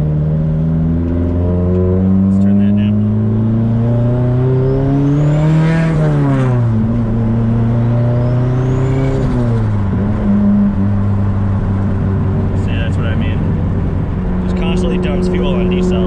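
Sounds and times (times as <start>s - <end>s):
car engine revving: 0.0s - 16.0s.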